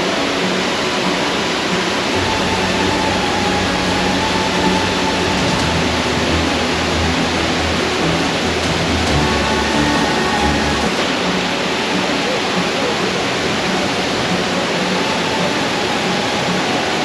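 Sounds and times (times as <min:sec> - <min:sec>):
waterfall rushing: 0:00.0 - 0:17.0.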